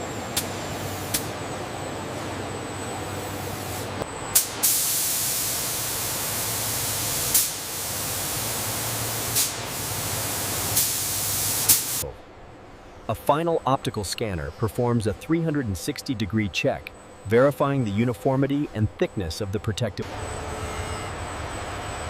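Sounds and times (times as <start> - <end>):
spray gun hissing: 3.6 - 12.0.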